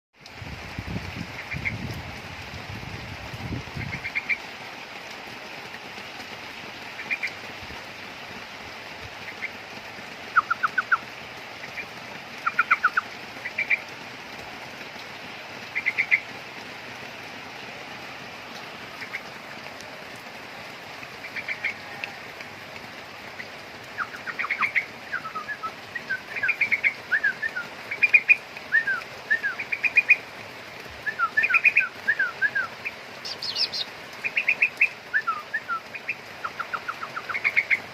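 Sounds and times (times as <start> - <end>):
bird chirping calls: 10.3 - 11.0, 11.6 - 13.8, 15.7 - 16.2, 23.4 - 30.2, 31.1 - 37.9.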